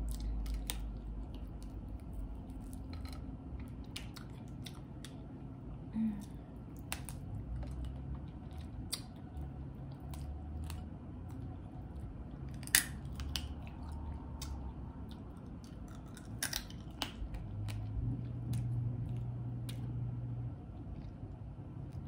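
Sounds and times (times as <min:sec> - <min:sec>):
chewing: 0:00.0 - 0:05.2, 0:06.6 - 0:20.0
low steady hum: 0:00.0 - 0:22.0
crawfish shells cracking: 0:12.4 - 0:17.8.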